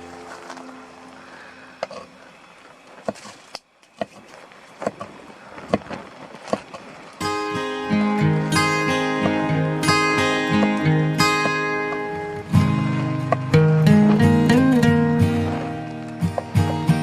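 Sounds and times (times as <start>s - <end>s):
guitar music: 7.2s - 17.0s.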